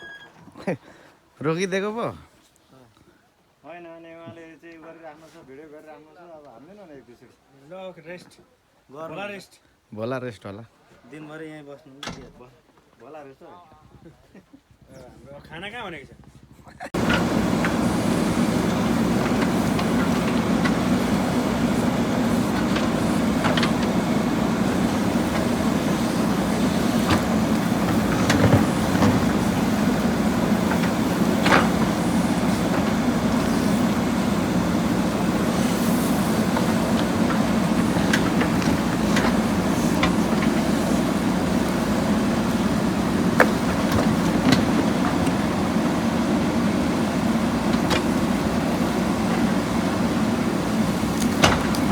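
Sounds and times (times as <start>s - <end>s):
diesel engine running: 17.0s - 51.9s.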